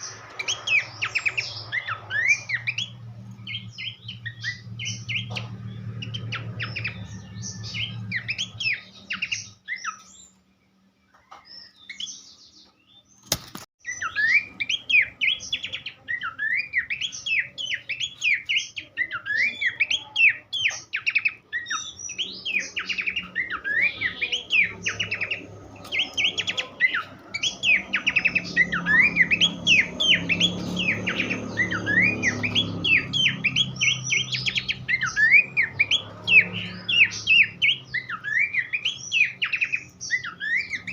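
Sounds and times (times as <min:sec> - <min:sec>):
bird singing sharp chirps: 0:00.0 - 0:10.4, 0:11.1 - 0:40.9.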